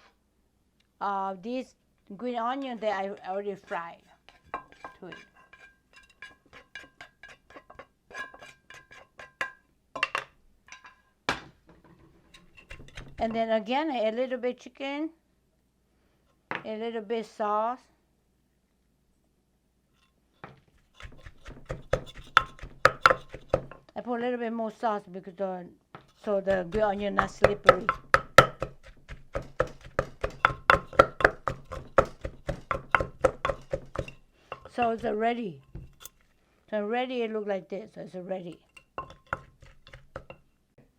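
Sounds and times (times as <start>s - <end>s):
pestle pounding in a mortar: 12.4s - 13.4s, 20.9s - 23.8s, 26.4s - 36.1s, 38.8s - 40.4s
utensil knocking on bowl: 12.4s - 13.4s, 21.0s - 23.8s, 26.3s - 36.1s, 38.7s - 40.4s
utensil clinking against bowl: 38.6s - 40.4s.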